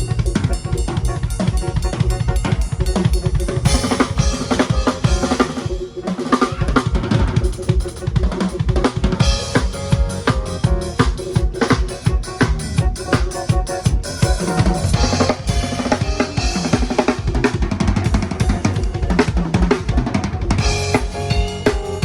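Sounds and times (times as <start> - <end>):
drum kit playing a beat: 0.0 - 22.0
music over sound system: 0.0 - 22.0.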